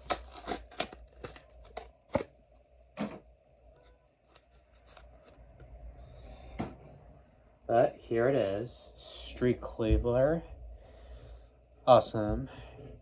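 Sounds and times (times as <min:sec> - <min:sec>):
plastic and cardboard tearing: 0:00.0 - 0:02.3, 0:04.3 - 0:05.4.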